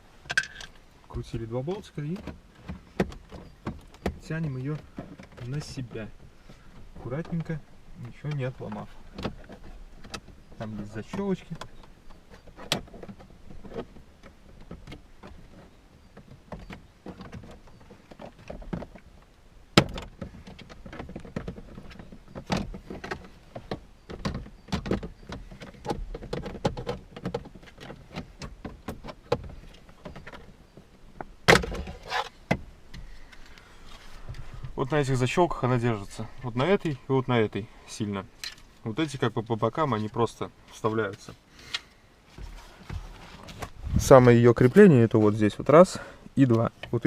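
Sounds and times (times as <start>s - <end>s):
plastic clicks and knocks: 19.8s - 33.6s.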